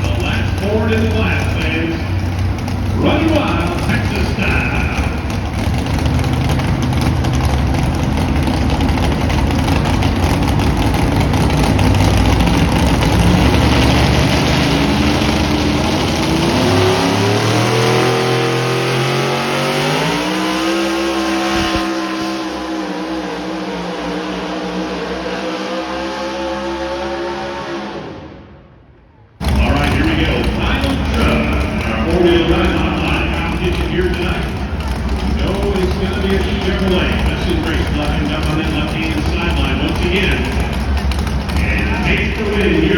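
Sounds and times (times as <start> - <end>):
truck engine at full throttle: 0.0 - 28.8, 29.4 - 42.9.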